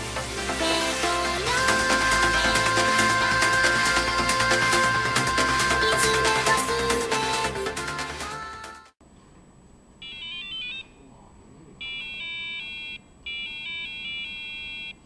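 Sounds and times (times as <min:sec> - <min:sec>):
background song: 0:00.0 - 0:09.0.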